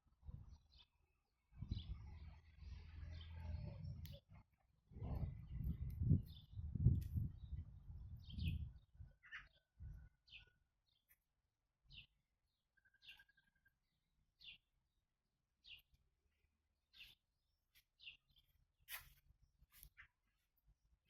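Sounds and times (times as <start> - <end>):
bird chirping: 5.0 - 11.2, 11.9 - 14.7, 15.6 - 16.0, 16.9 - 17.2.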